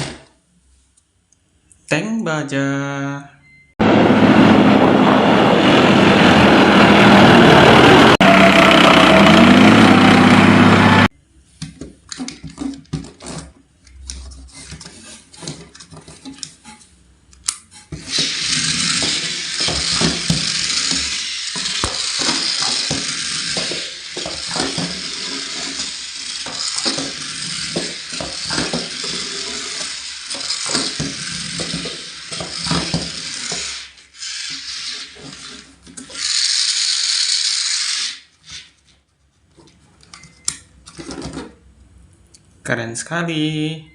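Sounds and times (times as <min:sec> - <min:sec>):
vehicle-like sound gliding pitch: 0:03.8 - 0:11.1.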